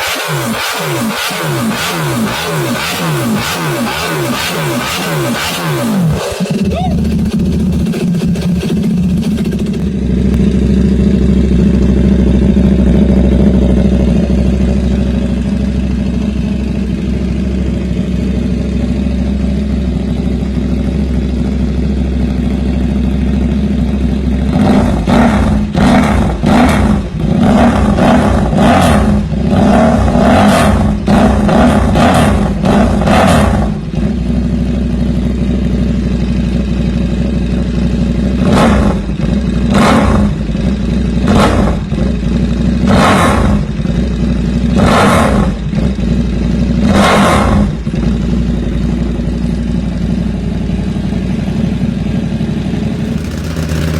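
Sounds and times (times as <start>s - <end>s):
motorcycle engine idling and revving: 0.0s - 53.9s.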